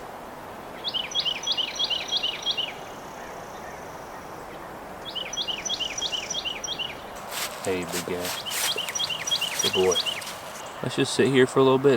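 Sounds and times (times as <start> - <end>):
steady outdoor hiss: 0.0 - 11.9.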